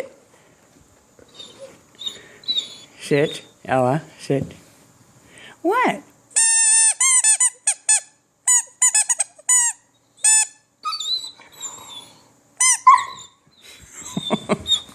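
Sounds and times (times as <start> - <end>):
squeaky dog toy squeaking: 6.4 - 11.4, 12.6 - 13.4.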